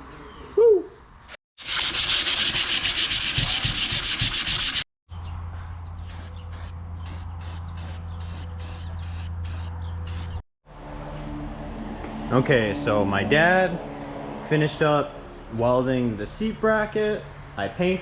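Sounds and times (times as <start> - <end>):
sanding scraping steel: 1.6 - 4.8
short hissing bursts: 6.1 - 10.4.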